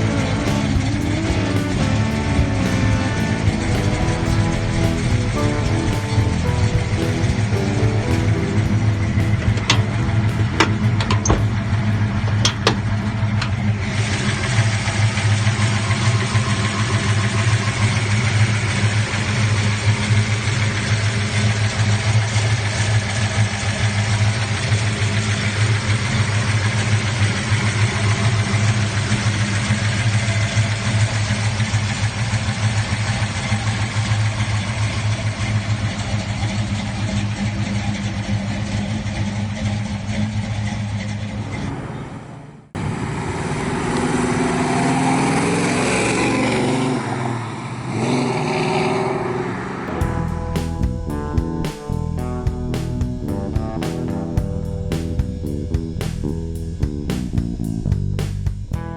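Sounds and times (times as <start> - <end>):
car engine idling: 0.0 - 19.3, 49.9 - 58.9.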